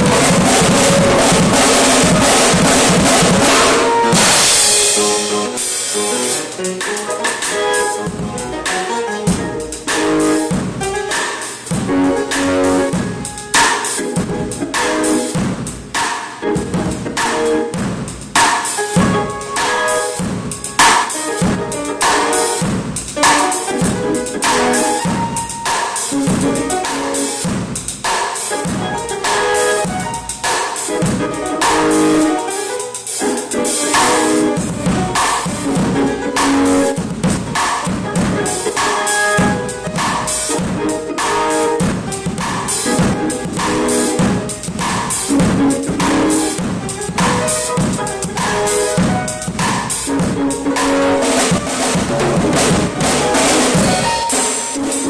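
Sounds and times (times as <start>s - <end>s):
sustained instrument notes: 0.0s - 15.4s, 28.6s - 55.0s
drum kit beat: 0.0s - 55.0s.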